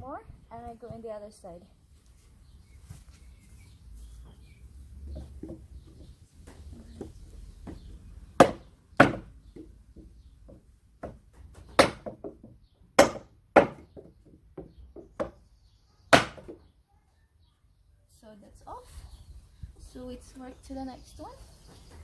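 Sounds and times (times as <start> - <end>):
hammer striking wood: 7.7 - 15.4, 16.1 - 16.6.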